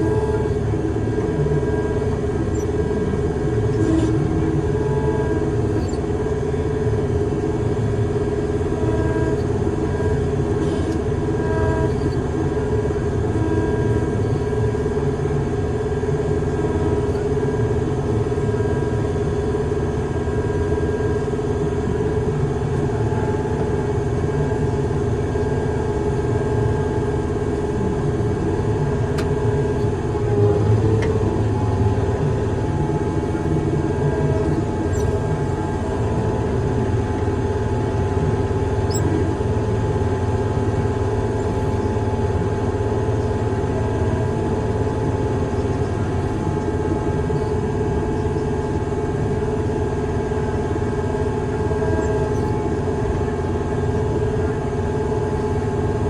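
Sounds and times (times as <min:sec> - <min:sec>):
construction machine engine rumbling: 0:21.2 - 0:56.0.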